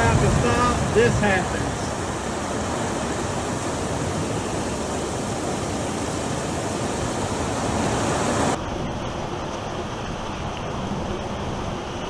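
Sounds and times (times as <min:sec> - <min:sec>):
heavy rain pouring: 0:00.0 - 0:08.8.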